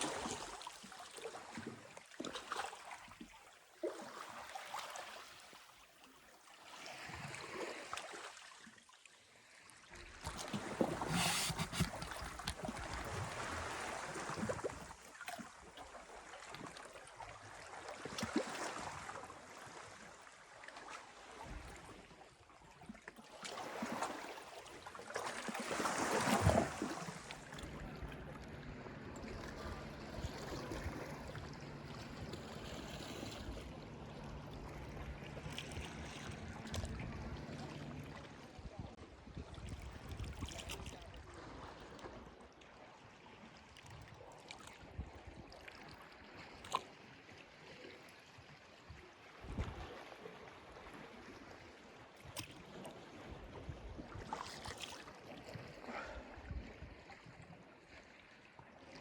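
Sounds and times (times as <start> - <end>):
sea water washing: 10.5 - 14.8, 25.2 - 38.9
steady low hum: 27.4 - 38.6.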